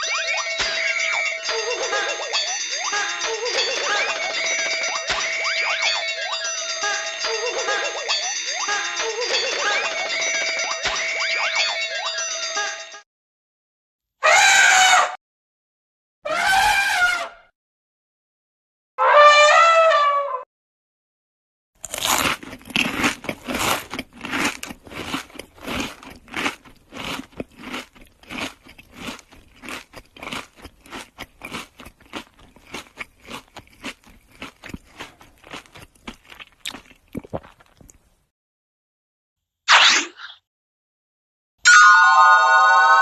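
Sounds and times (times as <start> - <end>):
crisp crunching: 21.8 - 38.1.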